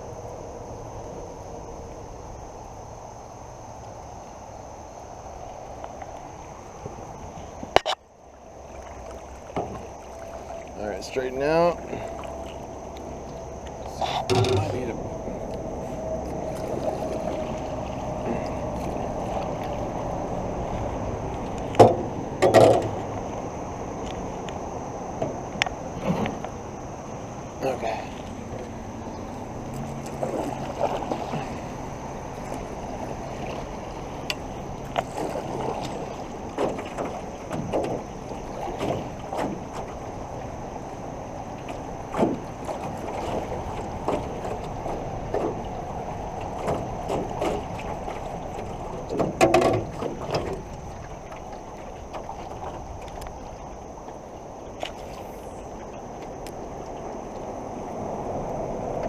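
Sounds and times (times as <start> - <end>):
creek water rushing: 0.0 - 59.0
knocks against canoe hull: 21.8 - 23.0, 42.1 - 42.4, 49.1 - 50.6.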